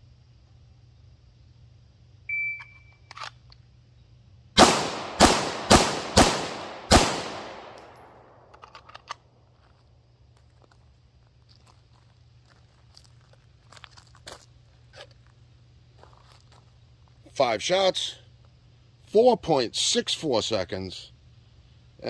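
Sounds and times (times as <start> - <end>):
shot timer beep: 2.3 - 2.9
pistol shots: 4.6 - 8.5.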